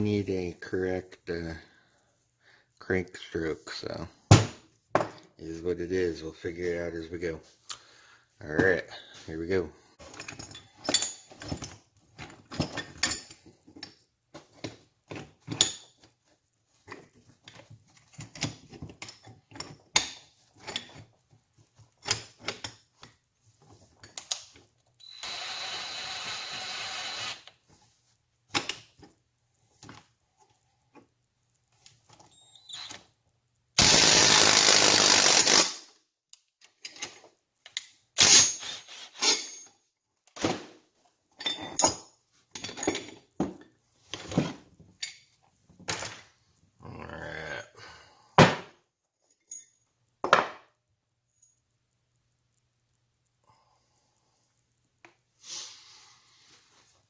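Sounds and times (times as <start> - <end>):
power tool whirring: 25.0 - 27.5, 33.8 - 35.8
tools and metal parts clicking: 33.8 - 35.8, 36.8 - 38.6.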